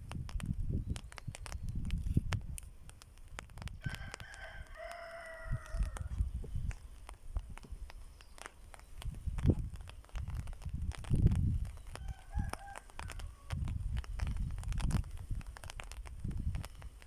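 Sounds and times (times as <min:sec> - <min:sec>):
sharp clicks: 0:00.0 - 0:17.0
rooster crowing: 0:03.8 - 0:06.1, 0:12.0 - 0:13.6.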